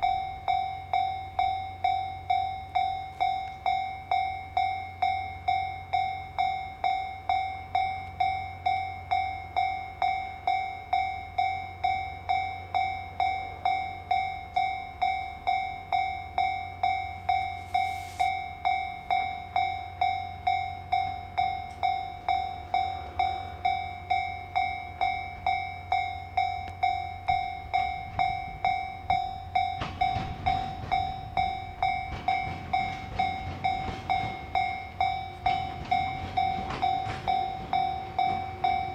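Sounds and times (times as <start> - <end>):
level crossing warning bell: 0.0 - 38.9
train rumble: 0.0 - 38.9
wheels clicking over rail joints: 18.6 - 38.9.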